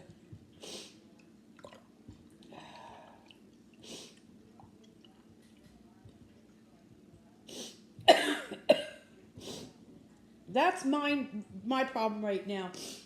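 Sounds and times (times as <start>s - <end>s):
liquid stirring wet sounds: 1.0s - 7.2s.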